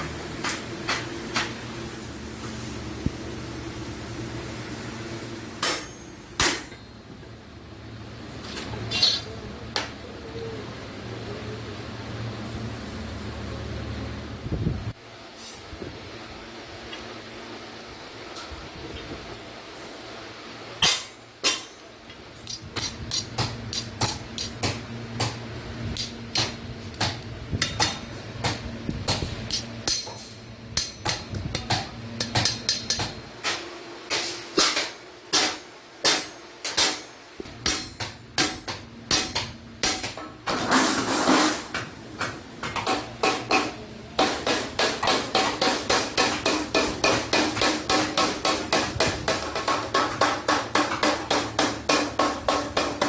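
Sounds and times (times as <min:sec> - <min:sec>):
hammer striking sheet iron: 0:05.6 - 0:07.0, 0:20.8 - 0:21.8, 0:22.4 - 0:25.4, 0:26.0 - 0:41.8, 0:42.6 - 0:53.0.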